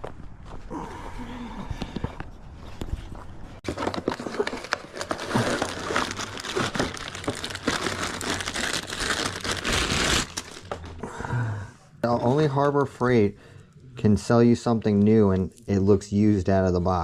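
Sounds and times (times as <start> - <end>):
packaging crinkling: 3.6 - 10.9.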